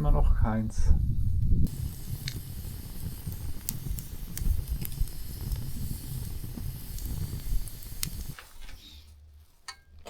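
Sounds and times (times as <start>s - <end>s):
campfire crackling and popping: 1.3s - 8.6s.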